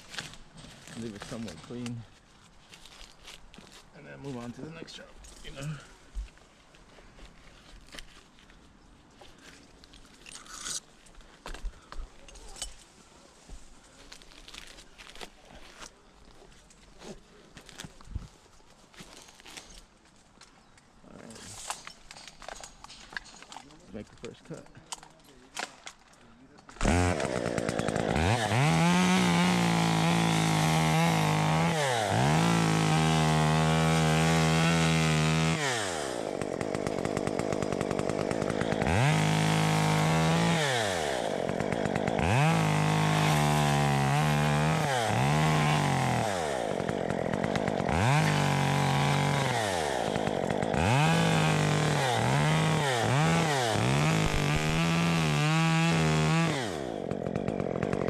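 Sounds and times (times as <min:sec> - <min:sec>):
chainsaw revving and cutting: 0:26.8 - 0:58.0.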